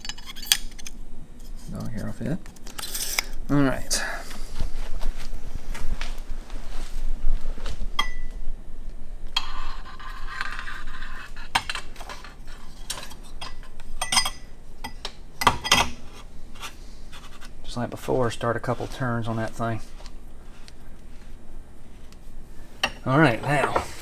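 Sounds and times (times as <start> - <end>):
metal rubbing: 9.4 - 14.4.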